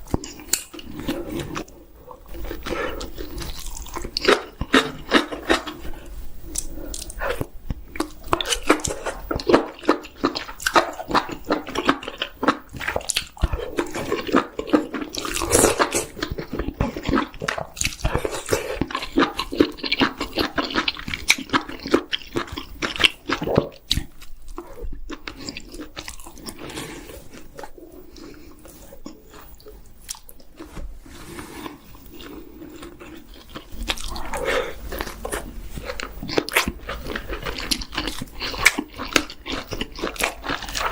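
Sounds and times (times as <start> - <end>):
wet chewing mouth sounds: 0.0 - 40.9
person crunching chicken: 0.1 - 40.9.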